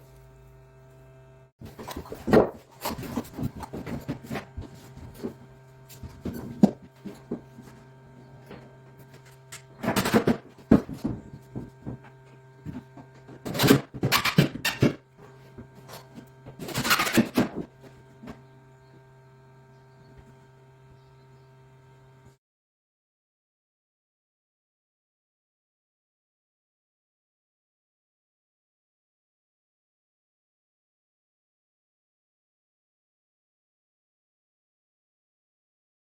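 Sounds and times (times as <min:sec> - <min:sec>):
block plane shaving wood: 0:01.6 - 0:19.2.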